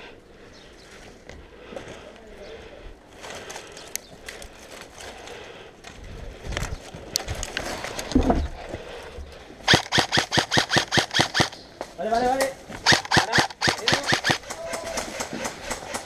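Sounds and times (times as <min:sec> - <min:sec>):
rustling and light knocks: 0:06.5 - 0:09.4
airsoft gun rapid shots: 0:09.7 - 0:11.6, 0:12.8 - 0:16.0.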